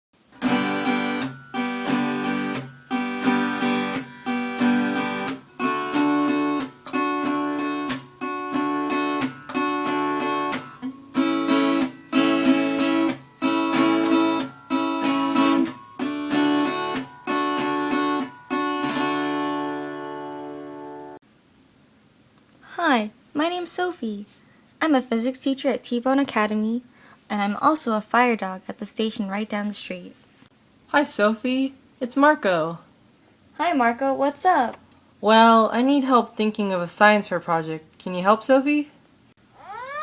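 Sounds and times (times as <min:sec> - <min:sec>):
acoustic guitar strumming: 0:00.2 - 0:21.2.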